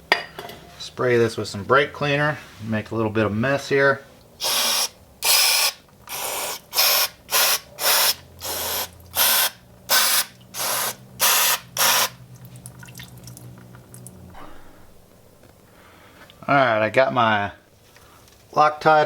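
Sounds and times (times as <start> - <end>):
aerosol spray hissing bursts: 4.4 - 12.2.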